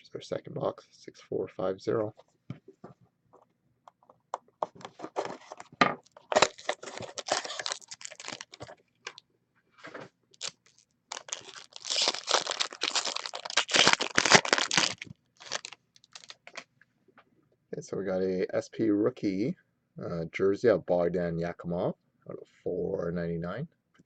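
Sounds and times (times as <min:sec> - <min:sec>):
packaging ripping and crinkling: 0:05.0 - 0:09.2, 0:10.4 - 0:16.6.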